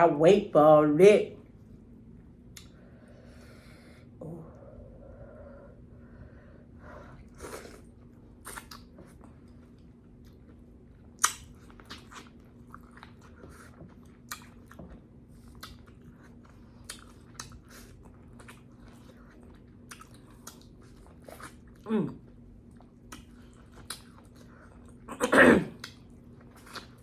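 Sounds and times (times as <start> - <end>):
chewing corn on the cob: 7.3 - 27.0.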